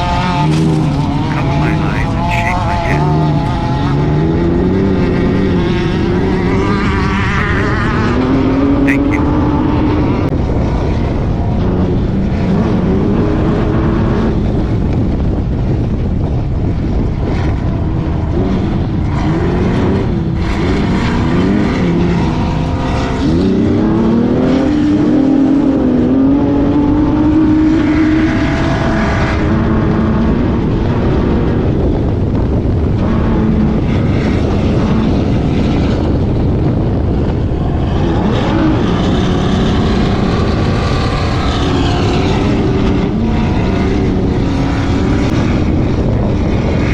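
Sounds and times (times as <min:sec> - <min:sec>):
noisy rumble: 0:01.3 - 0:03.1.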